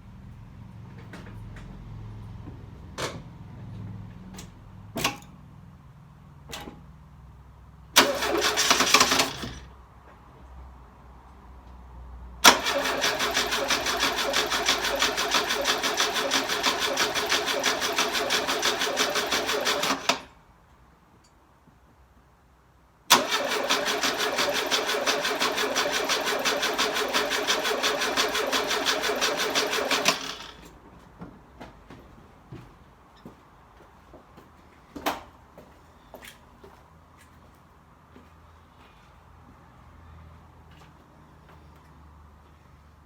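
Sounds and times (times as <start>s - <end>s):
engine cranking: 8.0s - 9.7s, 12.4s - 20.3s, 23.1s - 30.7s.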